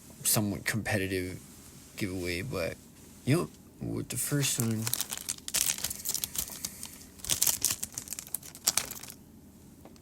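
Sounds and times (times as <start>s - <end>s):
foil wrapper tearing and crinkling: 4.5s - 9.2s.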